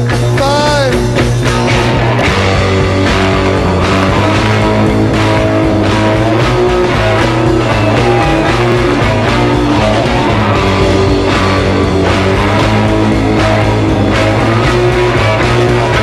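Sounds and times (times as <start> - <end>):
instrumental rock music: 0.0 - 16.0.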